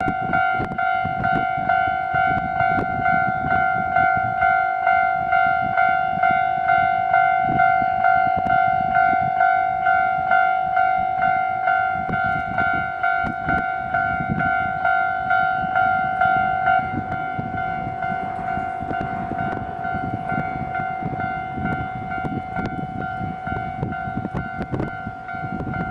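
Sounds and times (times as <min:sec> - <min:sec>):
level crossing bell ringing: 0:11.7 - 0:24.6.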